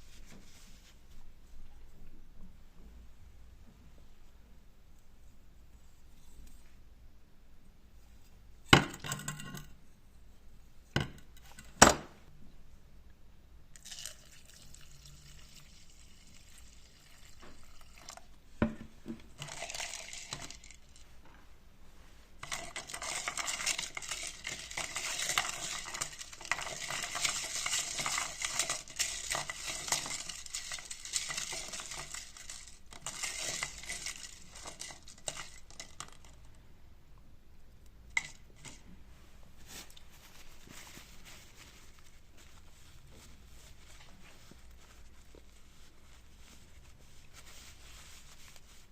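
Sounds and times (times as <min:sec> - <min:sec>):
small metal parts rattling: 0:22.4 - 0:36.4.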